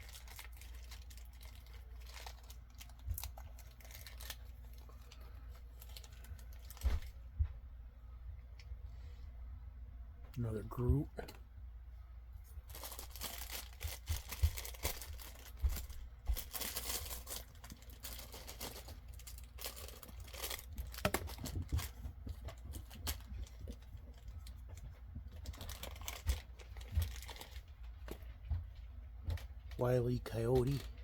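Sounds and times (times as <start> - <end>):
packaging crinkling and tearing: 0.0 - 7.2, 12.6 - 28.3
low steady hum: 0.0 - 31.0.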